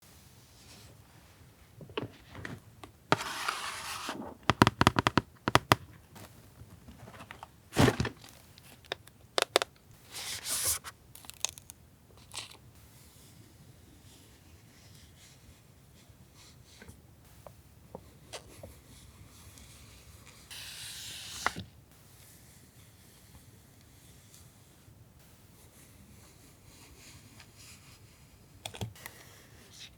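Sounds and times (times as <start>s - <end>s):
paper tearing: 3.1s - 4.4s
quick sharp taps and clicks: 4.4s - 6.0s
packaging crinkling: 5.6s - 12.6s.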